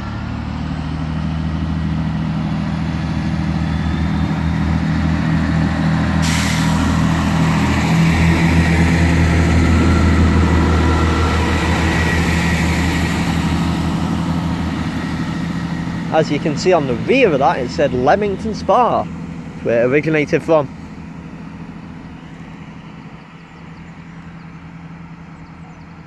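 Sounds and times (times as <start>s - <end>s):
diesel train engines throbbing: 0.0s - 26.0s
sudden hiss: 6.2s - 7.1s.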